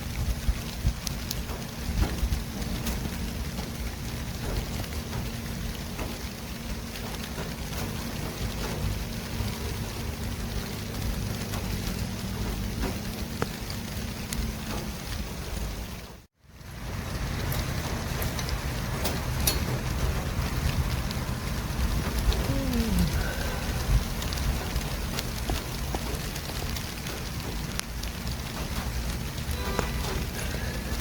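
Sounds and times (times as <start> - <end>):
low engine hum: 0.0 - 31.0
traffic rumble: 0.0 - 31.0.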